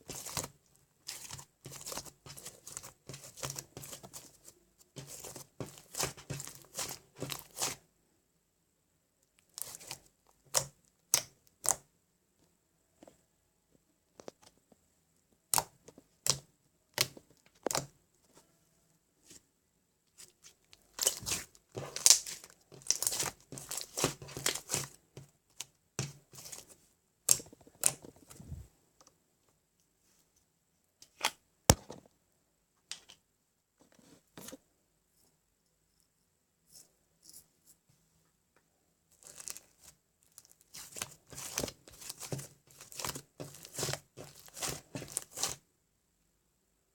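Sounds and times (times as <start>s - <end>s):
rustling and crinkling: 0.0s - 7.8s, 20.1s - 28.8s, 39.1s - 45.6s.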